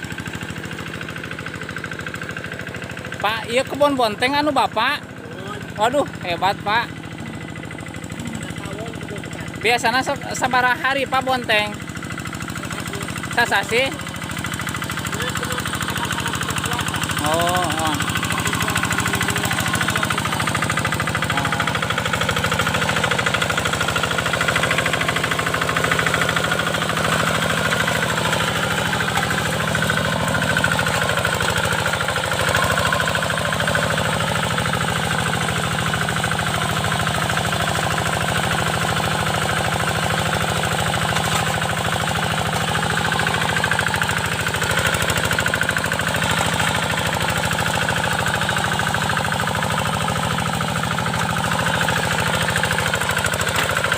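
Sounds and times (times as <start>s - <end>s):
diesel engine knocking steadily: 0.0s - 53.9s.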